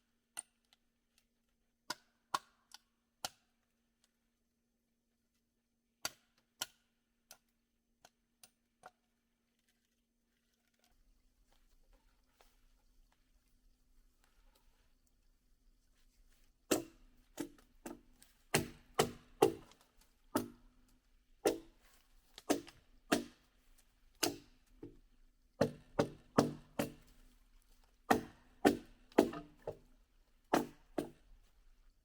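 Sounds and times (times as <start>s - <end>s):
axe chopping wood: 16.7s - 20.6s, 21.4s - 21.7s, 22.4s - 23.4s, 24.2s - 25.0s, 25.6s - 27.1s, 28.1s - 29.9s, 30.5s - 31.2s.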